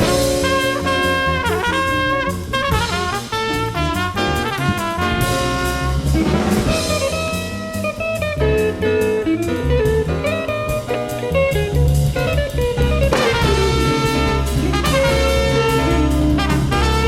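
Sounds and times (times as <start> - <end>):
trumpet: 0.0 - 7.5, 13.1 - 17.0
drum kit with cymbals: 0.0 - 17.0
piano: 0.0 - 17.0
walking bass: 0.0 - 17.0.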